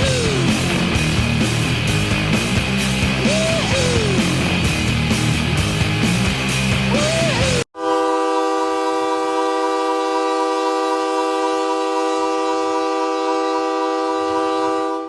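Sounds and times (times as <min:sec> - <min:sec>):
goal horn chord: 0:07.0 - 0:15.0.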